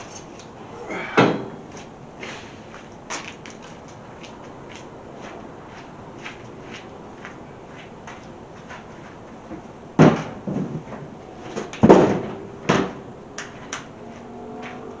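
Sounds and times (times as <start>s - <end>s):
loud thuds: 11.6s - 13.0s.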